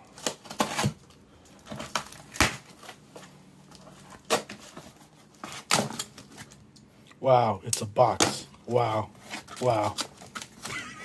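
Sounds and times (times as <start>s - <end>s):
packaging ripping and crackling: 0.0s - 3.0s
package handling: 9.2s - 10.9s.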